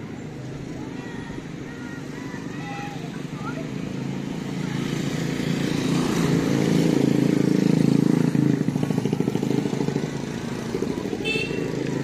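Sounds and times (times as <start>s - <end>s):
motorcycle engine running: 2.4s - 12.0s.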